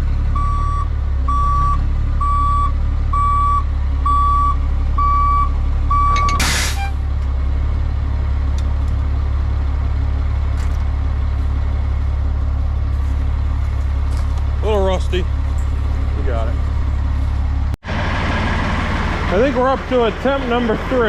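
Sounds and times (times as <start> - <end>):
truck backup alarm beeping: 0.0 - 7.0
diesel engine idling: 0.0 - 21.0
air brake hiss: 6.4 - 7.0.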